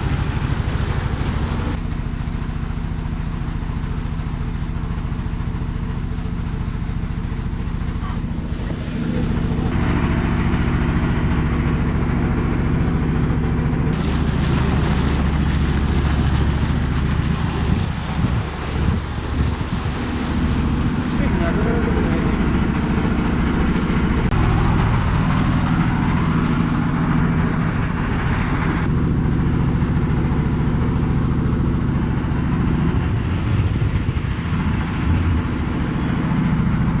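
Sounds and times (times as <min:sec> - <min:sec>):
boat engine running: 0:00.0 - 0:37.0
wind noise on microphone: 0:13.9 - 0:21.3, 0:32.2 - 0:37.0.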